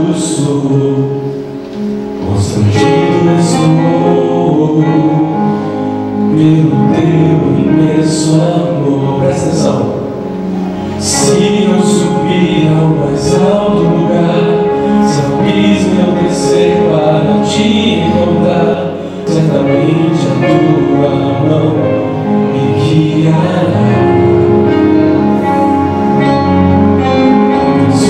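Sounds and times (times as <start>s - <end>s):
band playing slow song: 0.0s - 28.0s
people singing: 6.4s - 24.6s.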